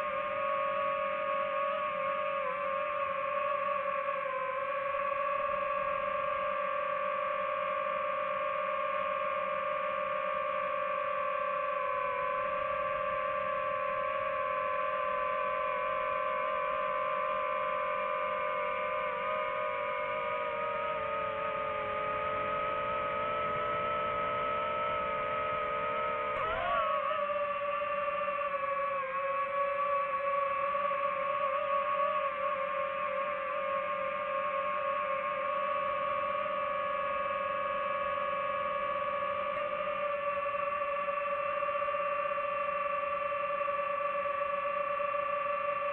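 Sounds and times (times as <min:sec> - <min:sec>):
drone propellers whining: 0:10.0 - 0:45.9.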